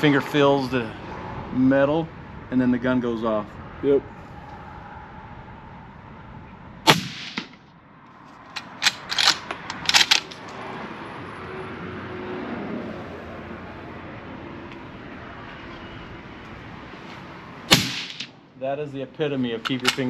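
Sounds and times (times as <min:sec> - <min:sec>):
loud rifle shot: 0:06.8 - 0:07.7, 0:17.7 - 0:18.4
echo-like crack: 0:06.9 - 0:07.8, 0:17.7 - 0:18.4
rifle bolt clicking: 0:08.6 - 0:10.5.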